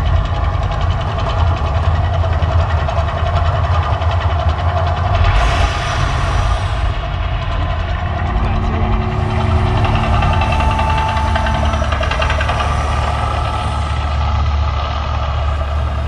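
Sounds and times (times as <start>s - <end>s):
deep rumbling: 5.0s - 16.0s.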